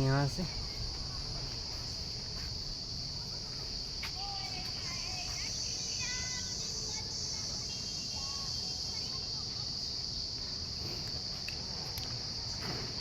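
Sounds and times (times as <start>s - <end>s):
low rumble: 0.0s - 3.2s
shrill insect chorus: 0.0s - 13.0s.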